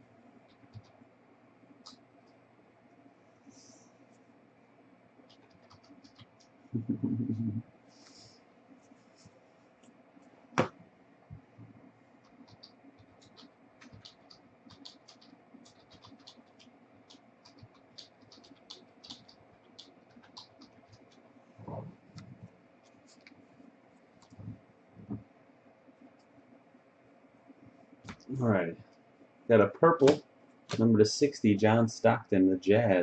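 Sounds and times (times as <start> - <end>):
trading cards scratching and ticking: 5.2 - 6.6, 12.2 - 21.4.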